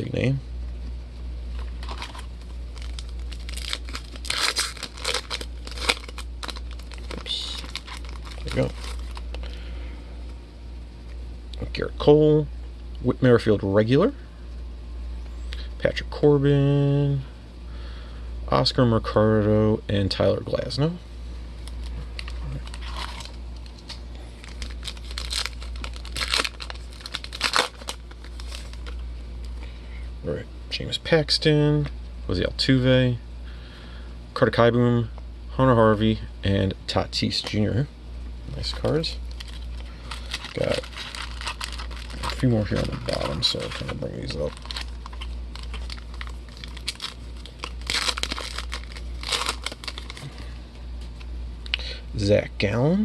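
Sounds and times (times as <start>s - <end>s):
steady low hum: 0.0s - 53.0s
foil wrapper tearing and crinkling: 1.8s - 9.5s, 21.6s - 29.0s, 38.7s - 50.5s.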